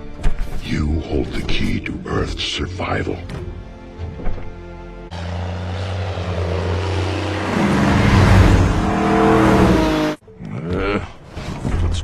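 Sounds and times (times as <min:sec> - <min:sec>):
car engines revving: 0:05.0 - 0:10.2.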